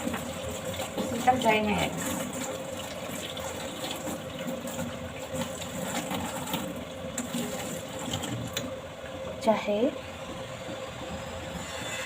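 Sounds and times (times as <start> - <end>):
tap water running into a sink: 0.0 - 9.4.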